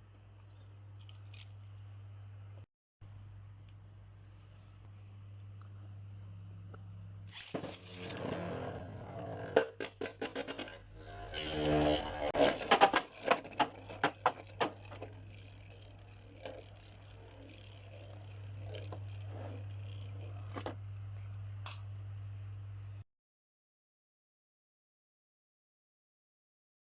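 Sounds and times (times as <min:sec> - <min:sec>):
steady low hum: 0:00.0 - 0:23.0
plastic launcher clicking and rattling: 0:12.4 - 0:18.1.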